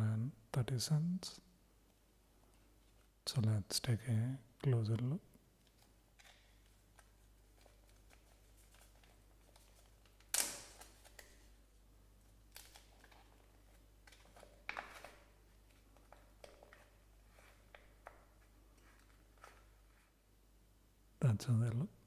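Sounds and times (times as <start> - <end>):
plastic packaging crinkling: 5.6 - 11.6, 12.5 - 18.2.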